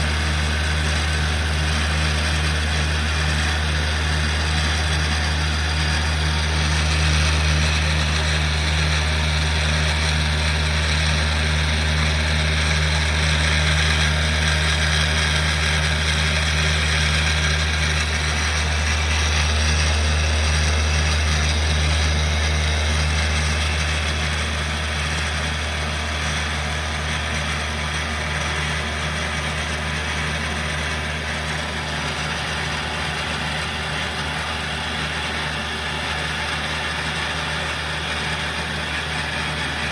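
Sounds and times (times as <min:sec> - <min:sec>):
machine hum: 0:00.0 - 0:39.9.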